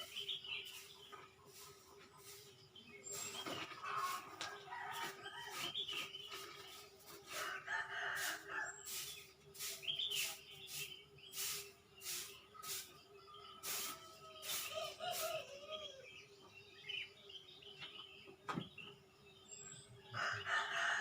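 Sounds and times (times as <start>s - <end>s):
birds chirping: 0.0s - 21.0s
rooster crowing: 7.4s - 8.8s, 20.2s - 21.0s.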